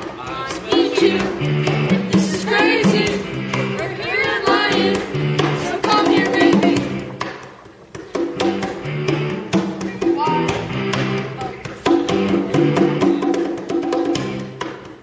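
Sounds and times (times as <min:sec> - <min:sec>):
upbeat pop backing track: 0:00.0 - 0:15.0
person singing: 0:03.8 - 0:07.0.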